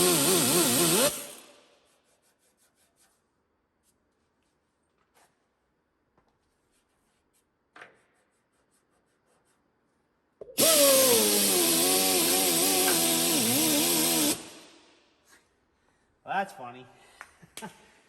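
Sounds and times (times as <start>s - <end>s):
electric power tool motor: 0.0s - 1.5s, 10.6s - 14.8s.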